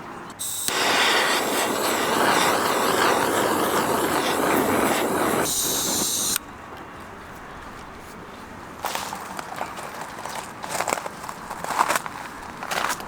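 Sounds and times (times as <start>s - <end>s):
loud steady hiss: 0.0s - 6.5s.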